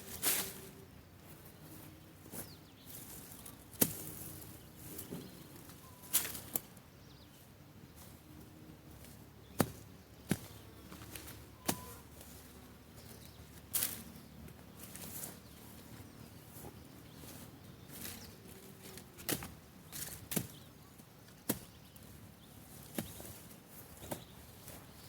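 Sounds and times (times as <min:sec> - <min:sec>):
blade chopping through weeds: 0:03.8 - 0:04.3.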